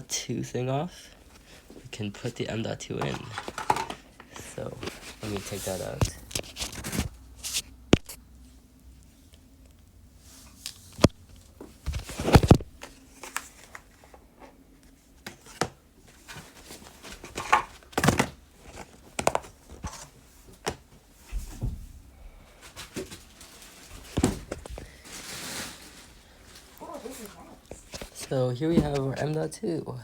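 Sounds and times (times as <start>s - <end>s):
packaging knocks and clicks: 3.0s - 4.4s.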